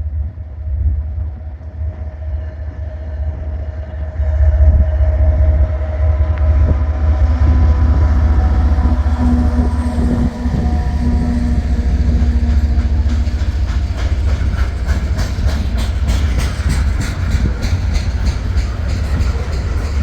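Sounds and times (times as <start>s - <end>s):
train rumbling past: 0.4s - 20.0s
wheels clicking over rail joints: 8.6s - 20.0s.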